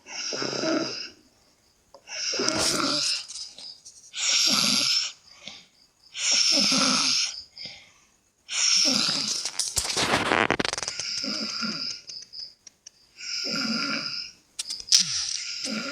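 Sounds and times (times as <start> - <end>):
person snoring: 2.1 - 3.2, 13.2 - 14.3, 15.3 - 15.9.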